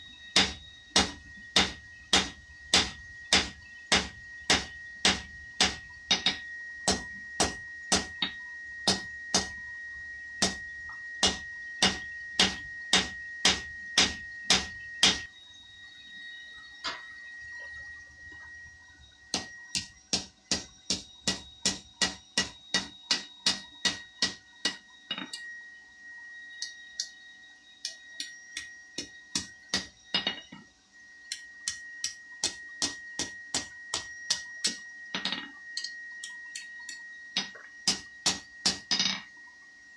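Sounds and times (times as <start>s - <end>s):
hammer striking steel on anvil: 0.4s - 8.3s, 8.9s - 9.6s, 10.4s - 15.3s, 19.4s - 24.8s, 27.8s - 30.3s, 31.3s - 39.2s.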